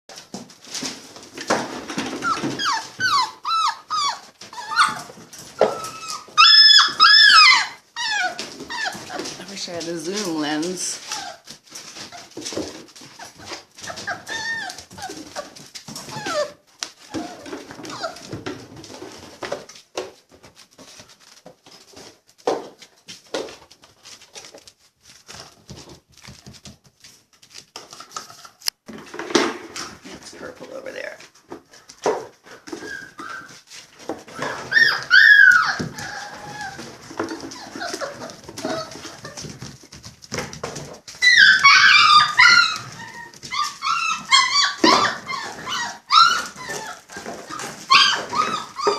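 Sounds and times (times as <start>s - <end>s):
puppies whimpering and yipping: 1.5s - 19.1s, 32.5s - 48.9s.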